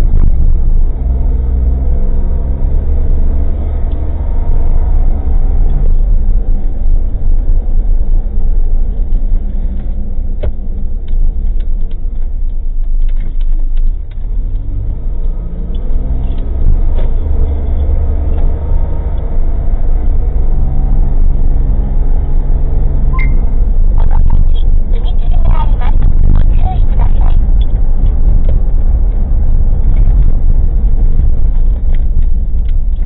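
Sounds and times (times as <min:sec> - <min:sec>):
car engine running: 0:00.0 - 0:33.0
car body clicks and rattles: 0:09.1 - 0:17.2, 0:27.3 - 0:33.0.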